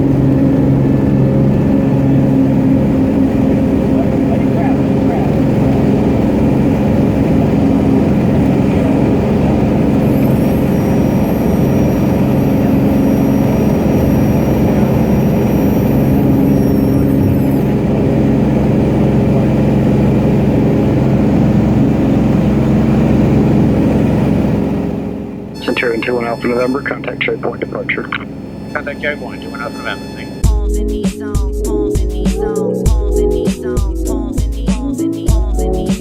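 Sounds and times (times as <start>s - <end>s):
propeller plane engine droning: 0.0s - 36.0s
thin high whine: 9.7s - 18.1s, 25.5s - 30.5s.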